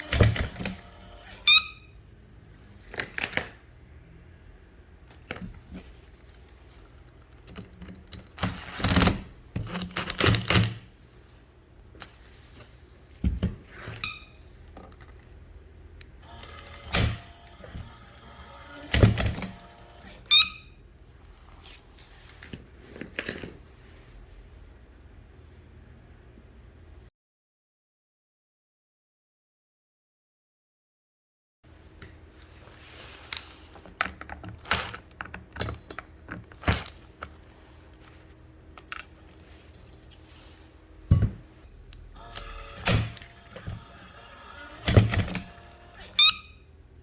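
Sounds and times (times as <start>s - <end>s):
hard parts clicking and clattering: 0.0s - 1.6s, 2.8s - 3.6s, 5.1s - 11.0s, 16.1s - 20.4s, 32.6s - 40.4s, 41.1s - 46.3s.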